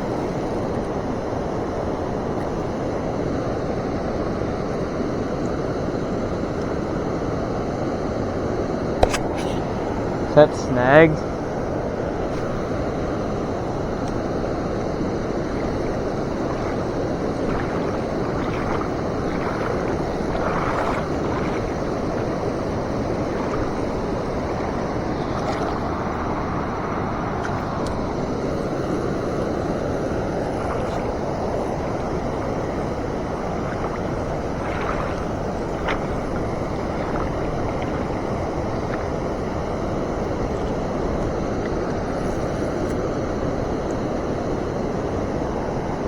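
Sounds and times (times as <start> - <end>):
river water rushing: 9.0 - 43.6.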